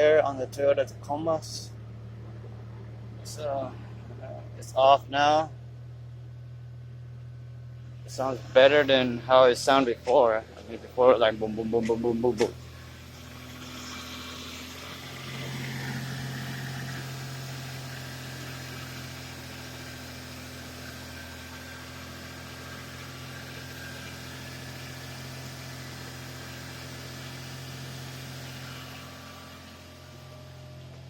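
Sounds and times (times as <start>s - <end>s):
car engine idling: 0.0s - 31.0s.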